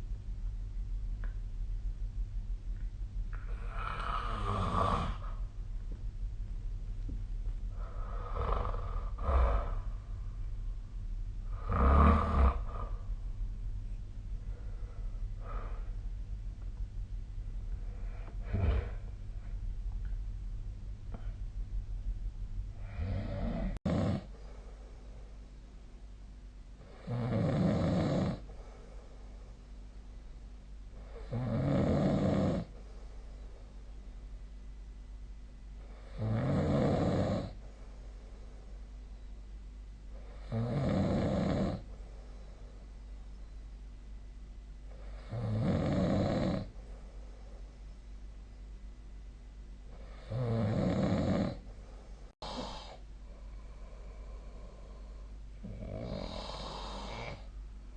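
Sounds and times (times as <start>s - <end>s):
steady low hum: 0.0s - 57.9s
person snoring: 3.4s - 5.4s, 7.7s - 10.0s, 11.4s - 13.1s, 17.8s - 19.1s, 22.8s - 24.3s, 26.8s - 28.4s, 31.0s - 32.7s, 35.8s - 37.6s, 40.2s - 41.9s, 44.9s - 46.7s, 50.0s - 51.6s, 52.4s - 53.0s, 53.6s - 57.5s.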